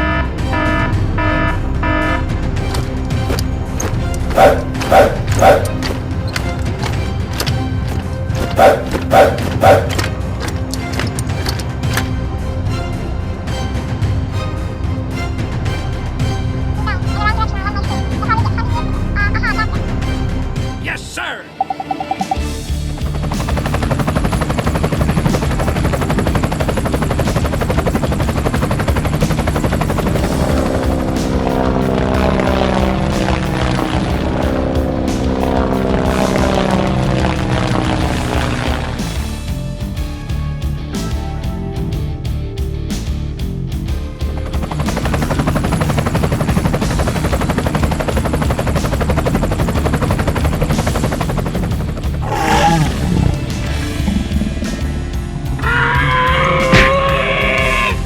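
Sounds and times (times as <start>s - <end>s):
background music: 0.0s - 58.0s
rapid rattling: 22.4s - 34.2s.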